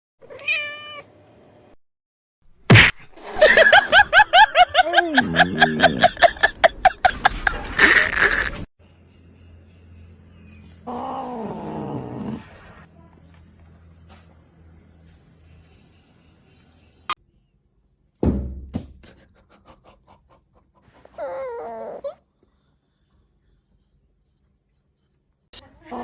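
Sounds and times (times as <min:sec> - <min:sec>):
cat crying: 0:00.3 - 0:01.1
faint hum: 0:03.4 - 0:18.0, 0:21.8 - 0:26.0.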